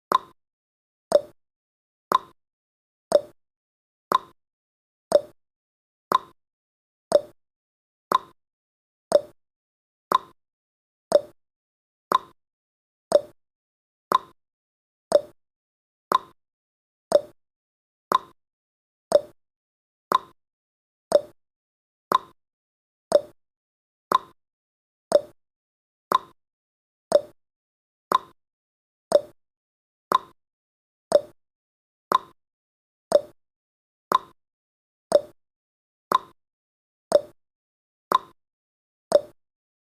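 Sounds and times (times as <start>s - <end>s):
timer clicks: 0.1s - 0.4s, 1.1s - 1.4s, 2.1s - 2.4s, 3.1s - 3.4s, 4.1s - 4.4s, 5.1s - 5.4s, 6.1s - 6.4s, 7.1s - 7.4s, 8.1s - 8.4s, 9.1s - 9.4s, 10.1s - 10.4s, 11.1s - 11.4s, 12.1s - 12.4s, 13.1s - 13.4s, 14.1s - 14.4s, 15.1s - 15.4s, 16.1s - 16.4s, 17.1s - 17.4s, 18.1s - 18.4s, 19.1s - 19.4s, 20.1s - 20.4s, 21.1s - 21.4s, 22.1s - 22.4s, 23.1s - 23.4s, 24.1s - 24.4s, 25.1s - 25.4s, 26.1s - 26.4s, 27.1s - 27.4s, 28.1s - 28.4s, 29.1s - 29.4s, 30.1s - 30.4s, 31.1s - 31.4s, 32.1s - 32.4s, 33.1s - 33.4s, 34.1s - 34.4s, 35.1s - 35.4s, 36.1s - 36.4s, 37.1s - 37.4s, 38.1s - 38.4s, 39.1s - 39.4s.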